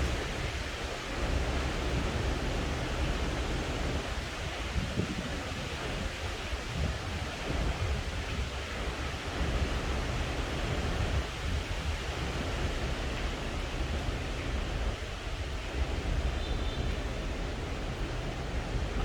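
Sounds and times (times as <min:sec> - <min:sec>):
strong wind rushing in gusts: 0:00.0 - 0:19.0
wind buffeting microphone: 0:00.0 - 0:19.0.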